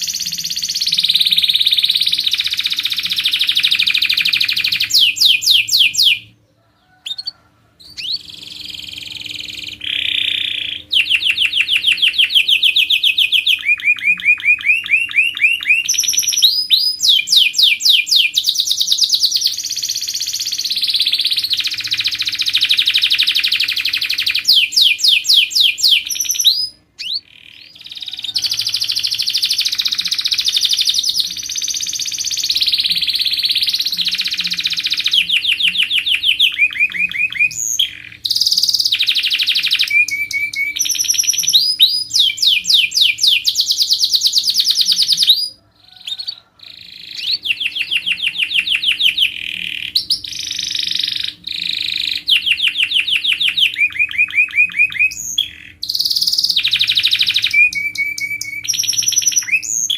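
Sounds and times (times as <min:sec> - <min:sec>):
canary singing trills: 0:00.0 - 0:59.9.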